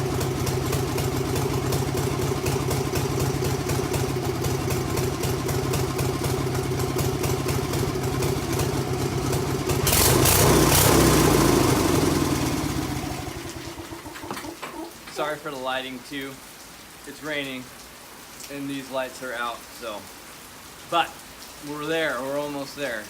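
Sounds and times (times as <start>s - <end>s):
stump grinder engine running: 0.0s - 14.9s.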